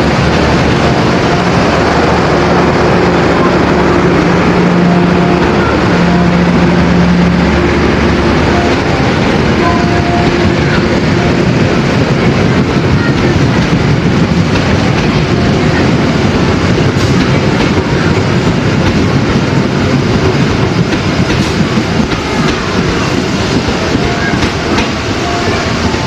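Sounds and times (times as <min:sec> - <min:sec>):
train rumbling on track: 0:00.0 - 0:26.0
train wheel clicks: 0:16.9 - 0:25.2.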